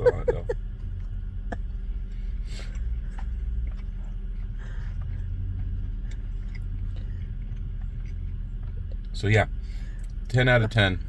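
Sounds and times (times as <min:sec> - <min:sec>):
low hum: 0:00.0 - 0:11.0
chewing with mouth clicks: 0:00.8 - 0:09.2.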